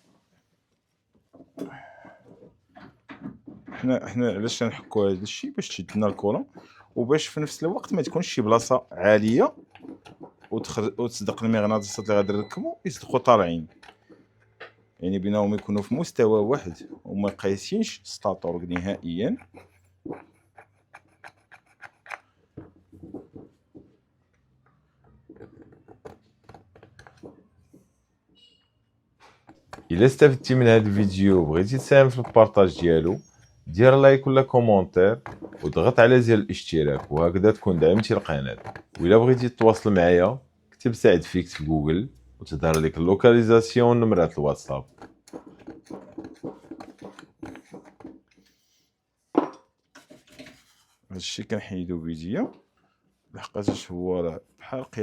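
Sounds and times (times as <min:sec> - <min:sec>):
hands handling tools and parts: 0:05.6 - 0:27.9, 0:29.2 - 0:34.4, 0:35.0 - 0:48.7, 0:49.4 - 0:51.1.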